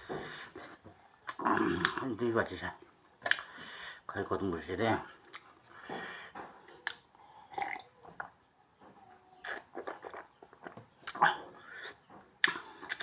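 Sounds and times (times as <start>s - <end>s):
mouth smacks: 0.1s - 2.1s, 3.2s - 3.6s, 6.7s - 8.3s, 9.4s - 13.0s
person chewing wetly: 6.7s - 8.3s, 9.4s - 13.0s.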